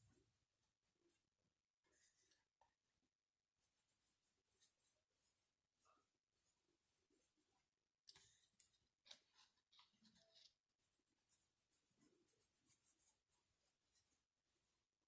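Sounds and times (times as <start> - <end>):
faint scratching: 3.6 - 15.0.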